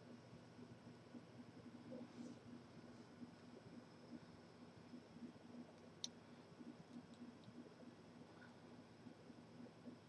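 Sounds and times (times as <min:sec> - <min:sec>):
soft low ticks: 0:03.2 - 0:10.0.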